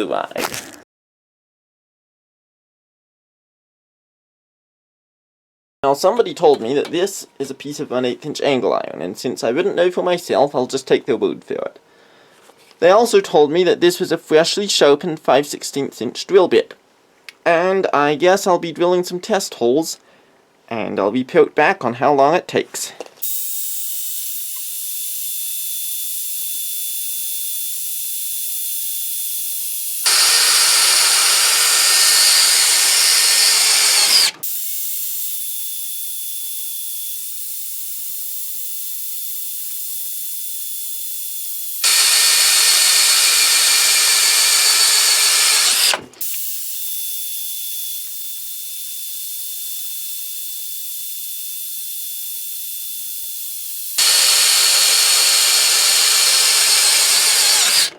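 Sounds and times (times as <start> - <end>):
cordless drill boring into steel: 23.2 - 57.9.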